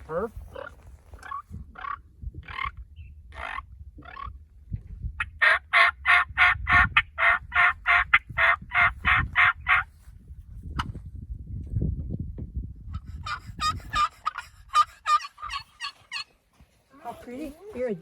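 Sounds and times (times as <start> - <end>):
turkey call notes: 13.2 - 16.4.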